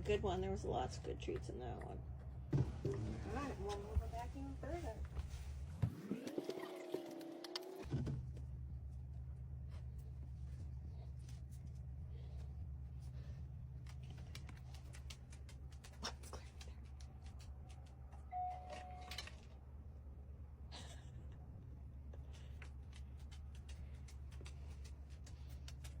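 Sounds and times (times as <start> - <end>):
steady low hum: 0.0 - 6.2, 7.8 - 26.0.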